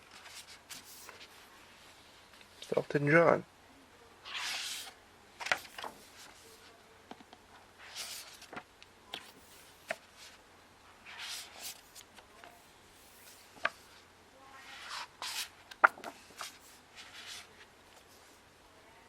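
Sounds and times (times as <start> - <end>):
book pages turning: 0.1 - 1.3, 4.3 - 6.6, 7.8 - 10.4, 11.0 - 14.0, 14.6 - 18.3
paper taps and rustles: 15.7 - 16.6.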